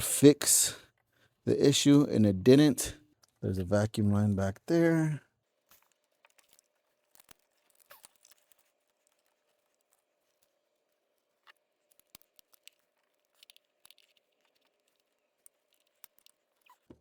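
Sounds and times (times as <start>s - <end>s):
clicks and rustles of hands: 5.4s - 17.0s.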